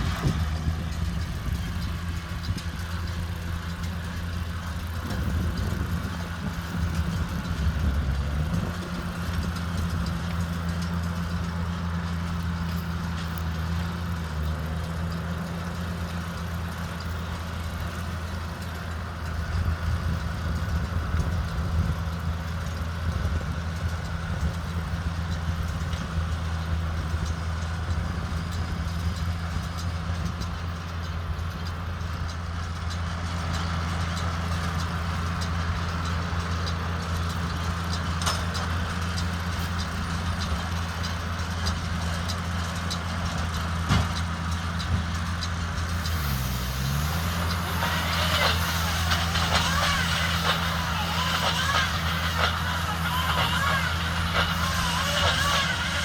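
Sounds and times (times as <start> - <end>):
tractor engine running under load: 0.0 - 56.0
machinery clicks and knocks: 27.0 - 56.0.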